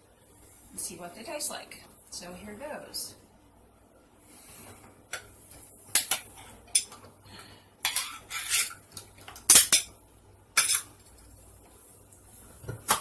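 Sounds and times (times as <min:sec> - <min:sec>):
cutlery clinking against dish: 0:07.8 - 0:08.8, 0:09.4 - 0:09.9, 0:10.6 - 0:11.2.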